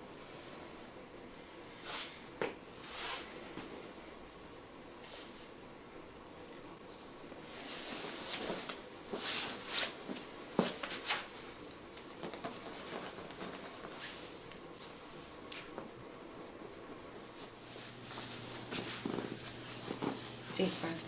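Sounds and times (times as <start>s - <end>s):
clothing rustling: 7.4s - 16.5s, 17.1s - 21.0s.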